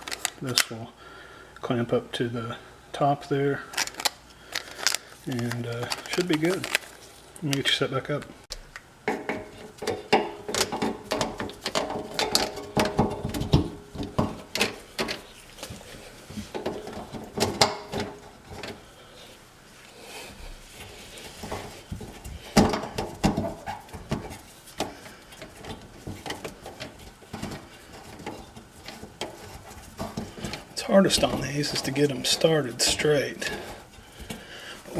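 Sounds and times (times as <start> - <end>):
plastic parts squeaky scraping: 3.8 - 7.2, 20.8 - 34.9
plastic pipes knocking: 9.1 - 18.8, 21.3 - 34.9.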